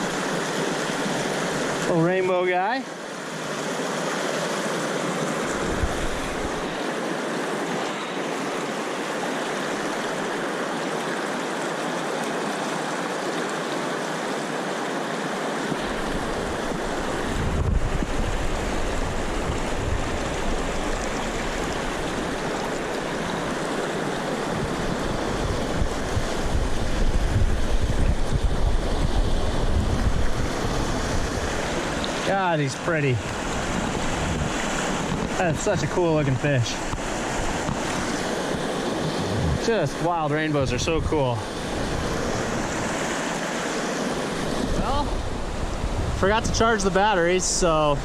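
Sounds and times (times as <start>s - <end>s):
water rushing over rocks: 0.0s - 48.0s
wind rumble on microphone: 5.5s - 6.8s, 15.7s - 32.3s, 33.3s - 36.0s, 36.8s - 40.0s, 40.6s - 43.0s, 44.1s - 47.0s.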